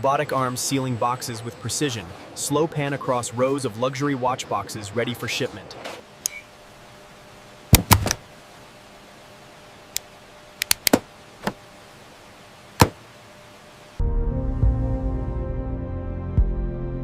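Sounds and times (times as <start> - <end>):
sharp clicks and knocks: 7.7 - 8.2, 10.0 - 11.6
soft music: 14.0 - 17.0.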